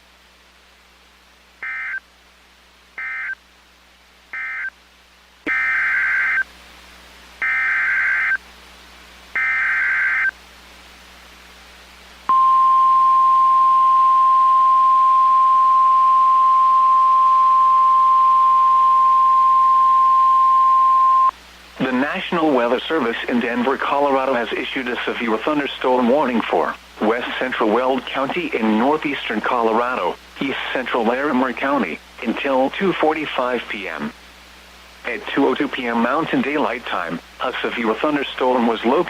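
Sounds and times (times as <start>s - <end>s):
single-pitch warning alarm tone: 1.6s - 2.0s, 5.5s - 6.4s, 12.3s - 21.3s
screechy data bursts: 3.0s - 3.4s, 4.4s - 4.7s, 5.5s - 6.5s, 7.4s - 8.4s, 9.4s - 10.3s.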